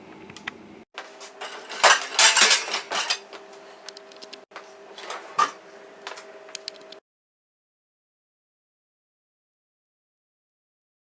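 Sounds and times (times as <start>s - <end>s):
dishwasher rack rattling: 1.0s - 7.0s.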